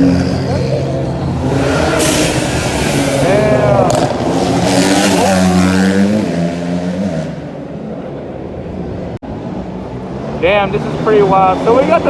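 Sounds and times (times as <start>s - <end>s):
car engine revving: 0.0s - 8.0s.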